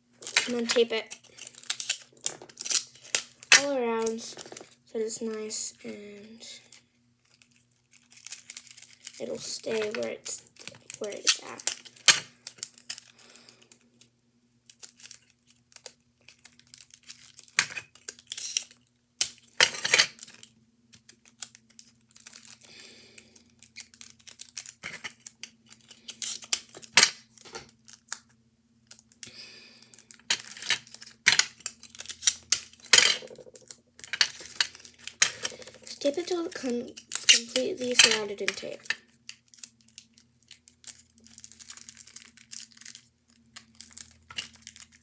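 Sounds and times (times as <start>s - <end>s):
faint steady hum: 0.0s - 45.0s
paper crinkling: 6.7s - 14.1s, 19.8s - 45.0s.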